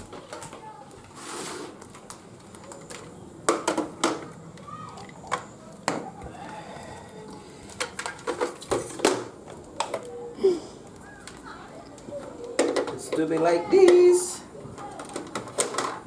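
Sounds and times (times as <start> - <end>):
plastic parts clicking and knocking: 1.9 - 4.3, 7.7 - 10.1, 12.2 - 14.0, 14.8 - 16.0.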